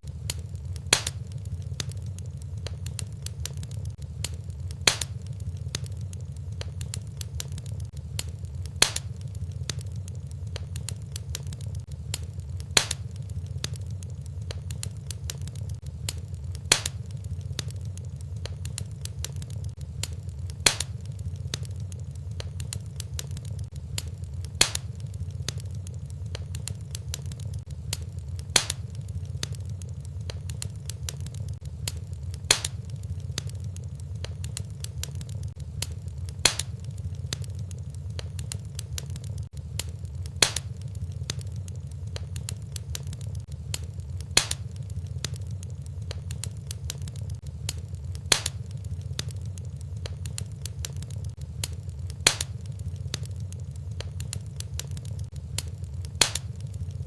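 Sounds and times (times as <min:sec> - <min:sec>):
fire crackling: 0:00.0 - 0:57.0
fire popping: 0:00.0 - 0:57.0
low rumble: 0:00.0 - 0:57.0.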